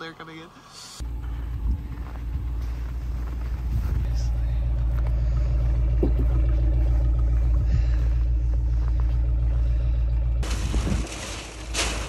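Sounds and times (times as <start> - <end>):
vehicle engine idling: 0.0 - 12.0
wind noise on microphone: 1.4 - 4.5, 7.5 - 8.2, 10.5 - 11.2.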